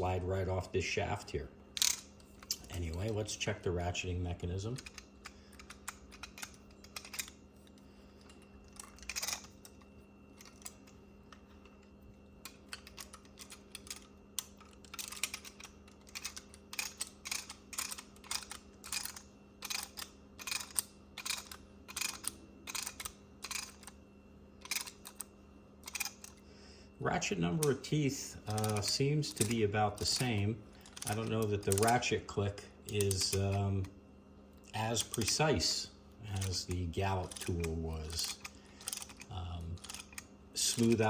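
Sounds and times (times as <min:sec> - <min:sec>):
ratchet clicks: 0:04.8 - 0:07.4, 0:08.8 - 0:09.5, 0:12.5 - 0:23.9, 0:24.6 - 0:26.3, 0:28.5 - 0:32.0, 0:37.2 - 0:41.0.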